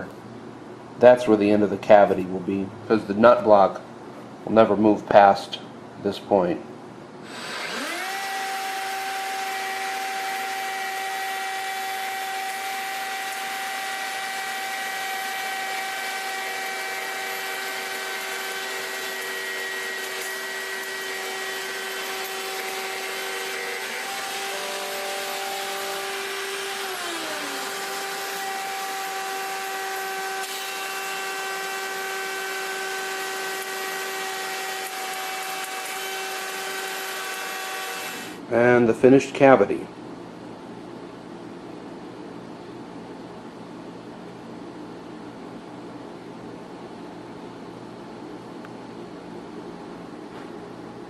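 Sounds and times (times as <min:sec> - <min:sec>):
electric router whining: 0:07.2 - 0:38.4
router cutting wood hiss: 0:07.2 - 0:38.4.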